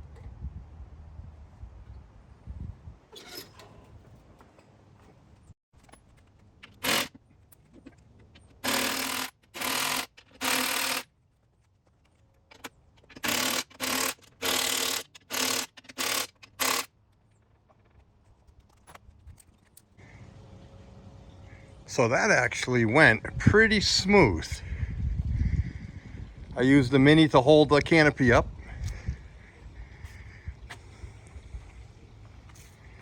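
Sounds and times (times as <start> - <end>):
impact wrench bursts: 6.6 - 7.2, 8.6 - 11.1, 13.0 - 16.9.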